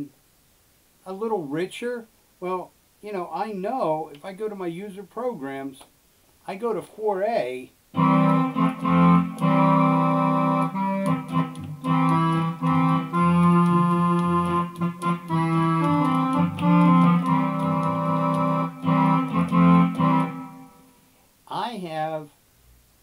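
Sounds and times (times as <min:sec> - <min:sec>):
digital accordion chords and melody: 0:08.0 - 0:20.9.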